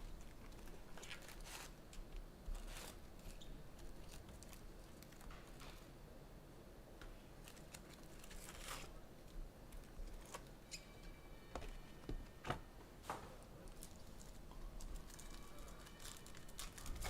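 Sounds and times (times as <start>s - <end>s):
card packs rustling and tearing: 0.2s - 1.8s, 7.4s - 9.0s, 13.7s - 17.0s.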